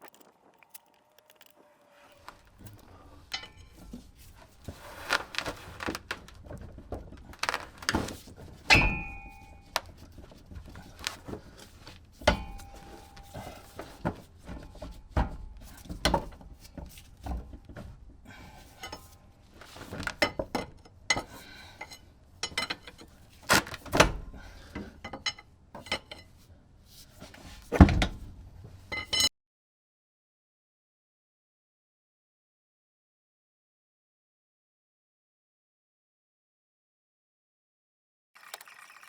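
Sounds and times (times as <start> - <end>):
metal tools clinking and knocking: 0.0 - 14.6.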